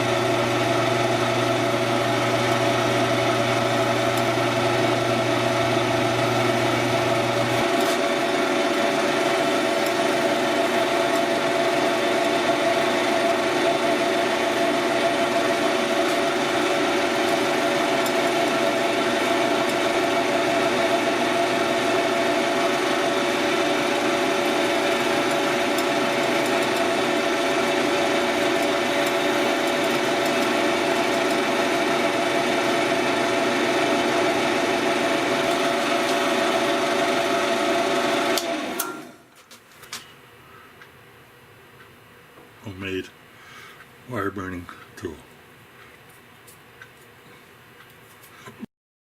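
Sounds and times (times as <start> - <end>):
wood lathe motor humming: 0.0 - 39.2.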